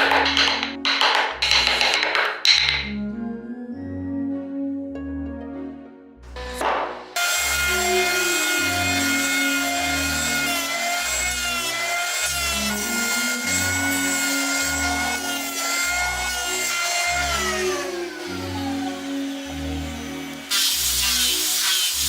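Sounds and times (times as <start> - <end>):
background music with bass: 0.0 - 22.0
power tool motor whine: 6.4 - 22.0.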